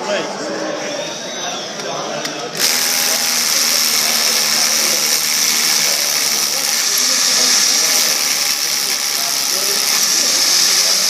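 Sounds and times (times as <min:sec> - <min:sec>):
rotary hammer drilling: 0:02.6 - 0:11.0.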